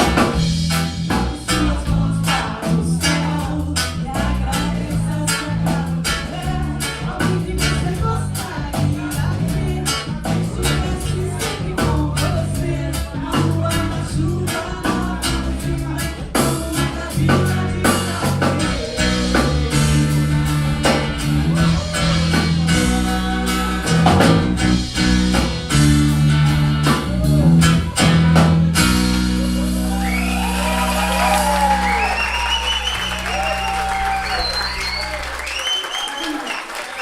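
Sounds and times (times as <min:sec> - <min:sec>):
drum hits: 0:00.0 - 0:01.6
live soul band playing: 0:00.0 - 0:35.5
person singing: 0:01.1 - 0:25.5.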